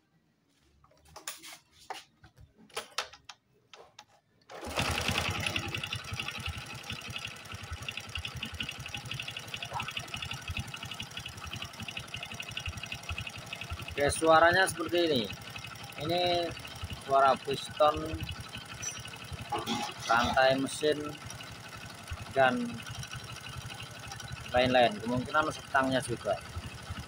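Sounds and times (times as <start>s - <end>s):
clicks and knocks: 2.2s - 4.2s
motorcycle engine rattling: 4.5s - 27.0s.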